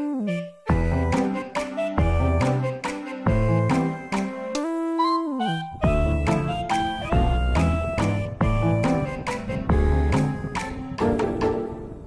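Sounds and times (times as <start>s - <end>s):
plucked notes: 0.1s - 12.0s
bass line: 0.7s - 1.2s, 2.0s - 2.6s, 3.3s - 3.8s, 5.8s - 10.7s.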